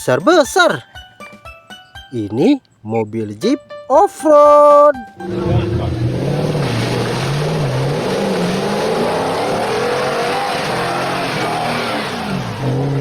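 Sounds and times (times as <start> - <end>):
car engine revving: 5.2 - 13.0.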